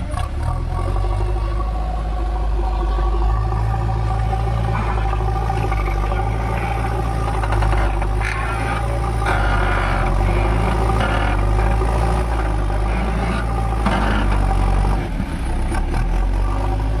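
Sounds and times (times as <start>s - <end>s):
diesel engine running: 0.0s - 17.0s.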